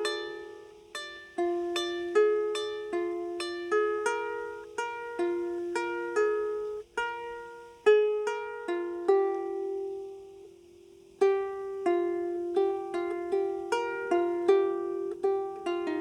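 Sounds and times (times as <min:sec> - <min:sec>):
harp plucked melody: 0:00.0 - 0:16.0.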